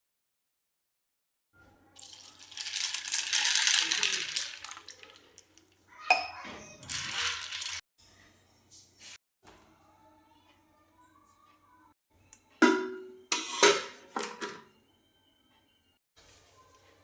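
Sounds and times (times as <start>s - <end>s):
utensils and dishes rattling: 2.0s - 5.6s, 6.3s - 7.8s.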